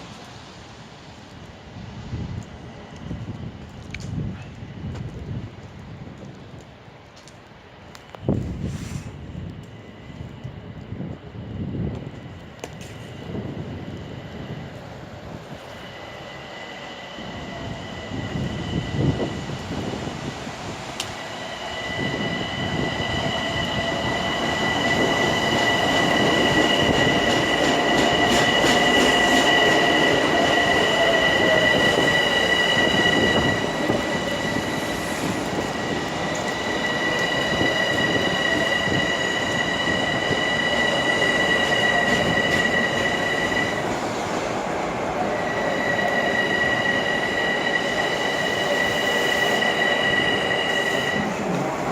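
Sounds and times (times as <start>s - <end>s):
rumble of train cars: 0.0s - 51.9s
high-pitched train squealing: 15.3s - 20.1s, 21.0s - 44.0s, 45.2s - 51.9s
train motor whine: 21.0s - 43.9s, 45.2s - 51.9s.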